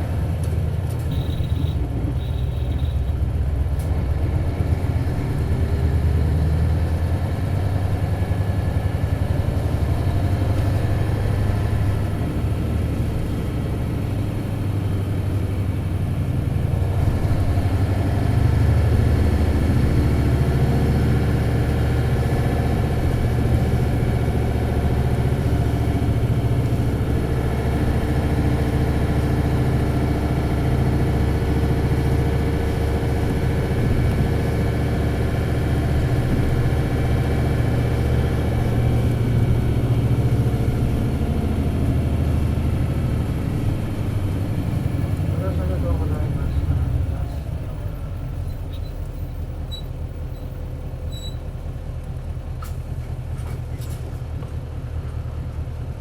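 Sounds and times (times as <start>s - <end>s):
diesel bus engine running: 0.0s - 56.0s.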